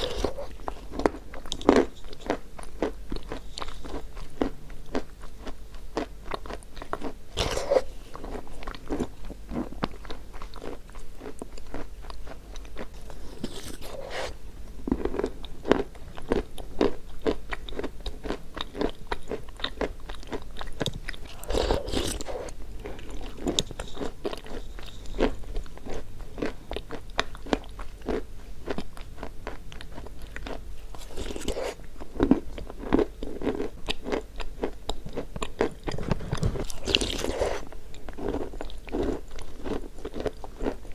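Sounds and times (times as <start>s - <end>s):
chewing chalk crunching: 0.0s - 40.9s.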